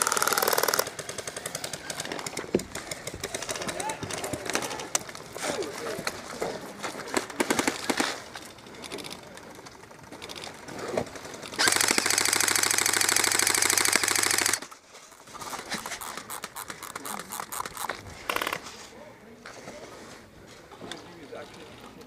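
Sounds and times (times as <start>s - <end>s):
airsoft rifle firing full auto: 0.0s - 4.8s, 7.1s - 9.1s, 11.5s - 14.8s.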